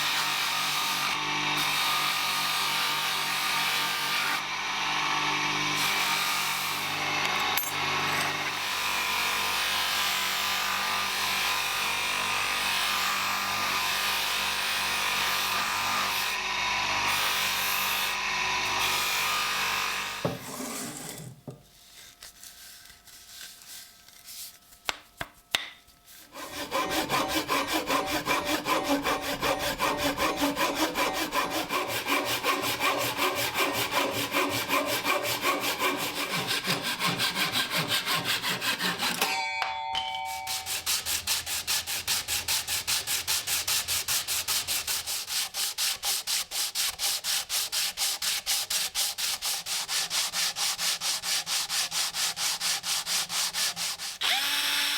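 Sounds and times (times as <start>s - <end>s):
hand sanding wood: 20.2s - 39.3s, 40.3s - 54.4s.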